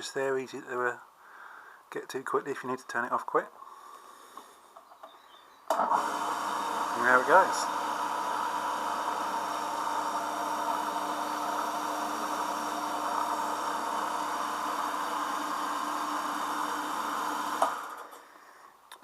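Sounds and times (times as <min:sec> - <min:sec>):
belt grinder motor hum: 0:05.7 - 0:18.2.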